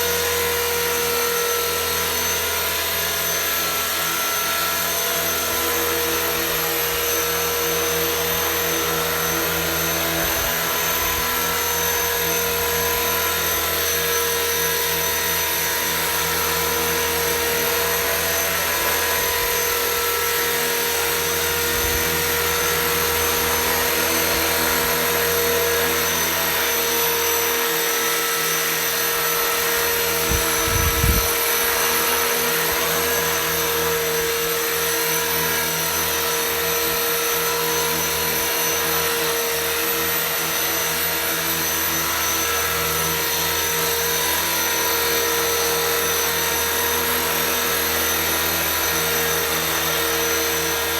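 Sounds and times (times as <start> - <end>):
model helicopter motor and rotors whine: 0.0 - 50.9
wind buffeting microphone: 30.2 - 31.4.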